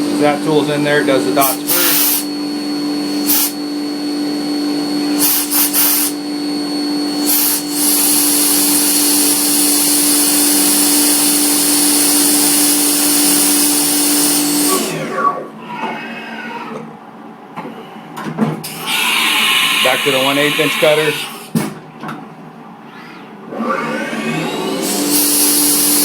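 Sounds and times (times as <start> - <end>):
mill spindle humming: 0.0 - 15.8, 22.8 - 26.0
high hiss: 1.4 - 2.3, 3.0 - 3.6, 5.2 - 6.2, 7.1 - 10.0.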